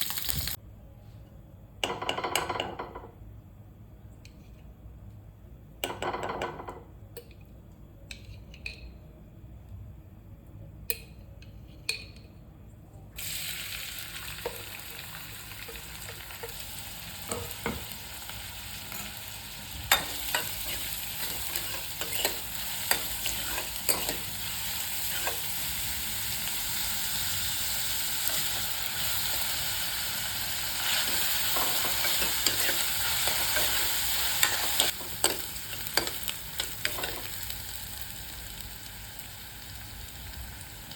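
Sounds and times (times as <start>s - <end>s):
frying sizzle in a pan: 0.0s - 0.6s, 13.2s - 40.9s
utensils clinking: 19.9s - 24.3s, 31.0s - 37.3s
spatula scraping a pan: 20.4s - 24.3s.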